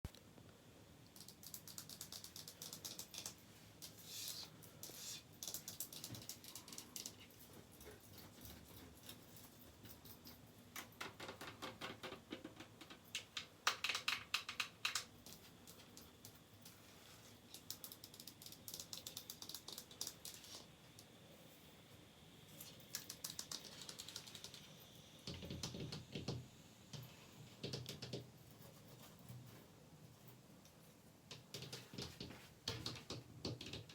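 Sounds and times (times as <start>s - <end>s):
tapping and scratching on surfaces: 1.2s - 10.0s, 25.3s - 29.6s, 31.3s - 33.9s.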